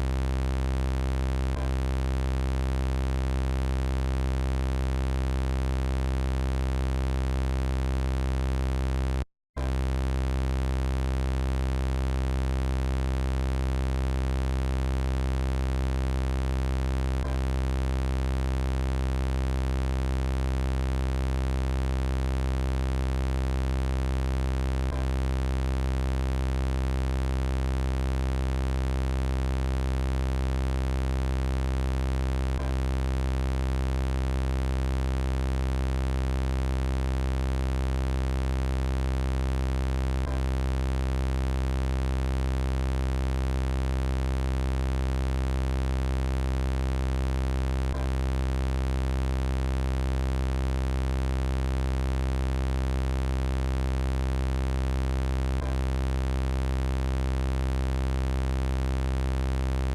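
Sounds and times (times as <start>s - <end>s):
low electronic buzz: 0.0s - 59.9s
faint loop click: 47.9s - 48.3s, 55.6s - 56.0s.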